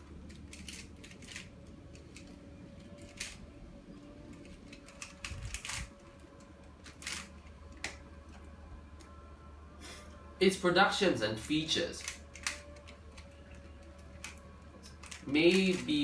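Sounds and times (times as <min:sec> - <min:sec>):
puzzle layers clicking and rasping: 0:00.0 - 0:08.0, 0:11.4 - 0:16.0
low steady hum: 0:00.0 - 0:16.0.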